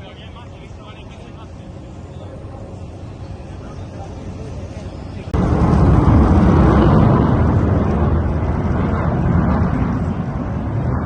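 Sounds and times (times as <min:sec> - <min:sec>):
jet engine rumble: 0:00.0 - 0:11.0.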